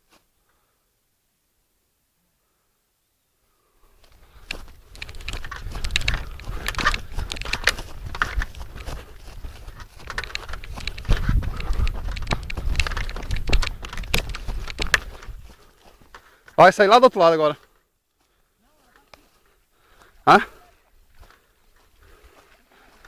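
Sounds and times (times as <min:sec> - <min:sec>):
crackling and rustling in brush: 0:03.9 - 0:16.7.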